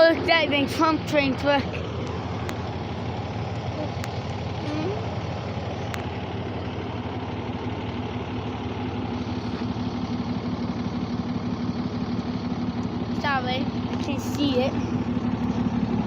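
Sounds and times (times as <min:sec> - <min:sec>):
truck engine idling: 0:00.0 - 0:16.0.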